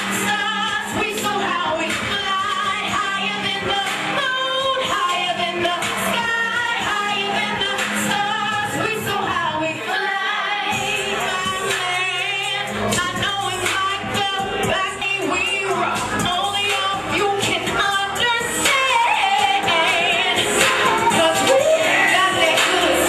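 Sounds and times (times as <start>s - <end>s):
backing music track: 0.0s - 23.0s
person singing with vibrato: 0.0s - 23.0s.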